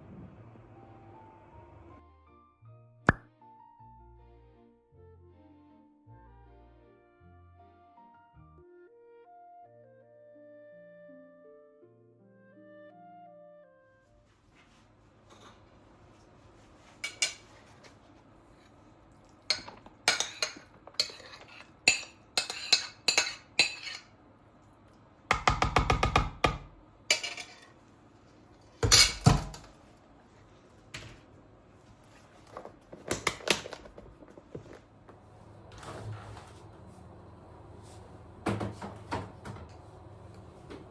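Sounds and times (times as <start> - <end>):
dishes and utensils clinking: 16.8 - 17.9, 18.6 - 24.1, 27.1 - 27.8, 28.8 - 29.7.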